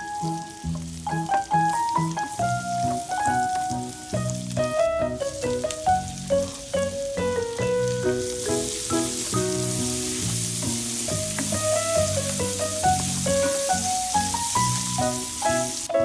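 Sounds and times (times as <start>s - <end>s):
background music with melody: 0.0s - 16.0s
food sizzling in a pan: 0.0s - 16.0s.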